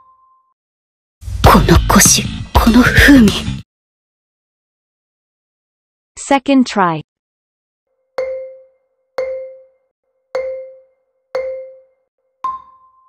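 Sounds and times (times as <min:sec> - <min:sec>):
marimba-like timer taps: 0:08.2 - 0:09.8, 0:10.4 - 0:12.9.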